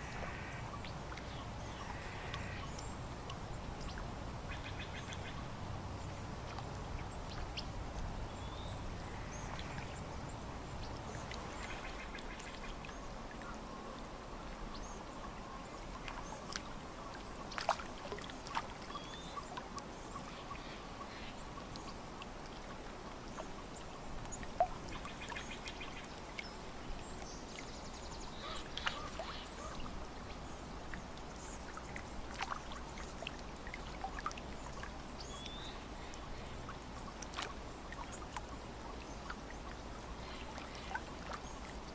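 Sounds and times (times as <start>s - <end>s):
water lapping at shore: 0.0s - 41.9s
birds calling: 28.4s - 29.8s.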